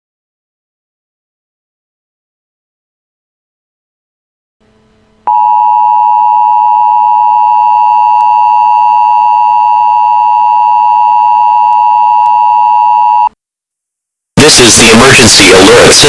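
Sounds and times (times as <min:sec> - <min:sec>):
steady alarm tone: 0:05.3 - 0:13.3.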